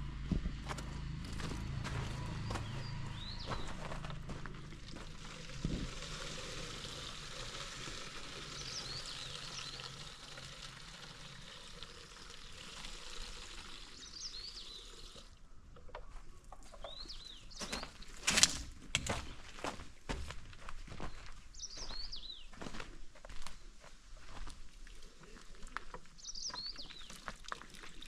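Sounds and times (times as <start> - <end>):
birds chirping: 0.3 - 5.1, 8.2 - 10.3, 13.9 - 18.3, 20.9 - 23.8, 25.2 - 27.3
water pouring and splashing: 3.5 - 15.4, 24.3 - 28.0.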